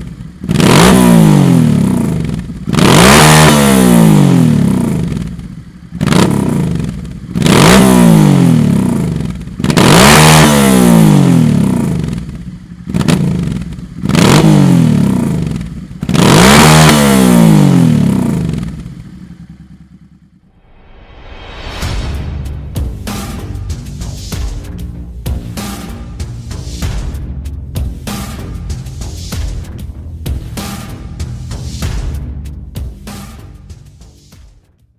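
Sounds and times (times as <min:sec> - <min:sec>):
motorcycle engine revving: 0:00.0 - 0:20.5, 0:27.8 - 0:34.1.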